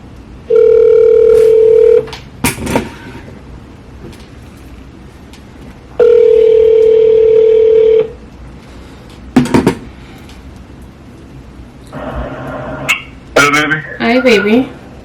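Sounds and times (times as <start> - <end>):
phone ringback tone: 0.5 - 2.1, 6.0 - 8.2.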